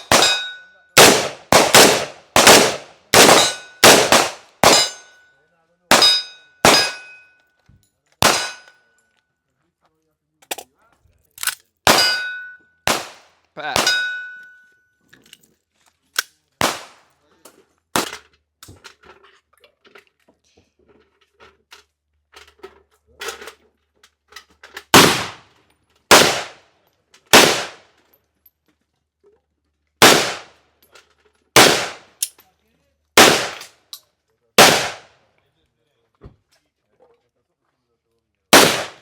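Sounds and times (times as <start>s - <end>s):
gunshots: 0.0s - 5.0s, 5.9s - 7.1s, 8.2s - 8.7s, 11.9s - 12.3s, 12.9s - 14.2s, 16.6s - 17.1s, 24.9s - 25.5s, 26.1s - 26.6s, 27.3s - 27.9s, 30.0s - 30.6s, 31.6s - 32.2s, 33.2s - 33.7s, 34.6s - 35.1s, 38.5s - 39.0s.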